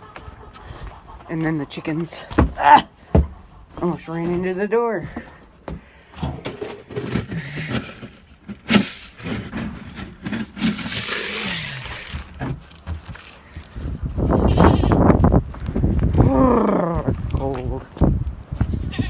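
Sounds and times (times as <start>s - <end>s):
knocks and scrapes of wood: 2.2s - 14.0s
rustling: 6.2s - 14.0s.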